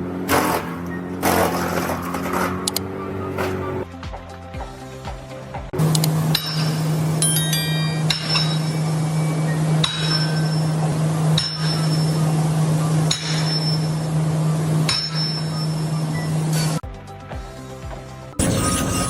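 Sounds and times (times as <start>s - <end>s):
wood chipper humming: 0.0s - 3.9s, 5.8s - 16.8s.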